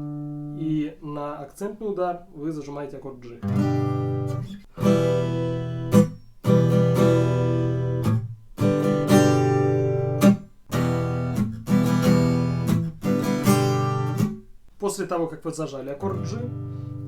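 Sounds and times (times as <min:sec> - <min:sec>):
guitar strumming: 0:00.0 - 0:00.8, 0:03.4 - 0:14.6, 0:15.9 - 0:17.0.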